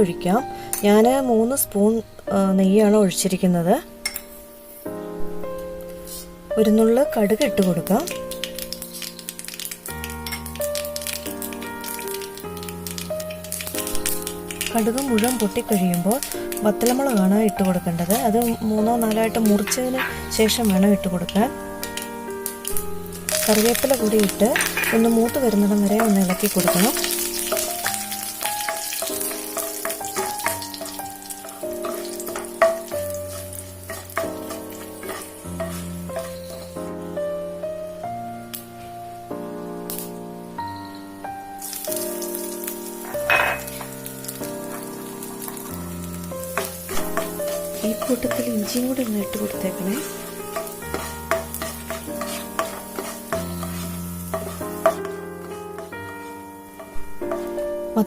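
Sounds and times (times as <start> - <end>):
chillies sizzling in hot oil: 0.0 - 58.0
soft background music: 0.0 - 58.0
spatula scraping pan: 19.4 - 20.3, 23.3 - 36.7, 46.4 - 57.6.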